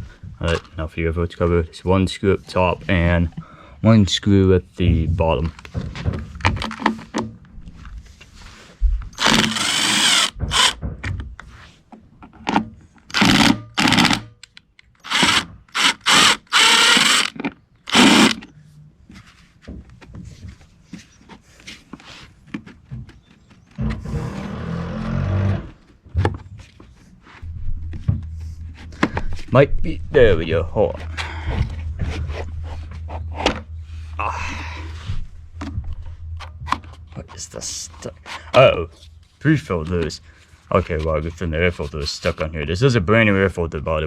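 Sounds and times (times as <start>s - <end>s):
impact driver spinning: 9.2s - 10.8s, 13.1s - 14.3s, 15.0s - 18.5s.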